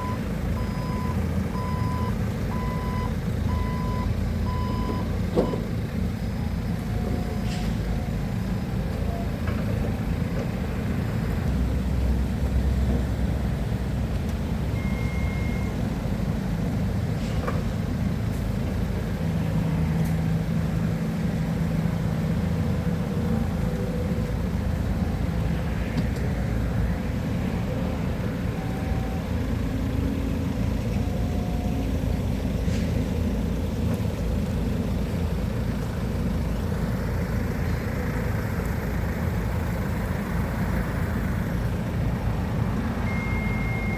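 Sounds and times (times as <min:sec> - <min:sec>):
diesel engine running: 0:00.0 - 0:43.9
brief tones: 0:43.0 - 0:43.9.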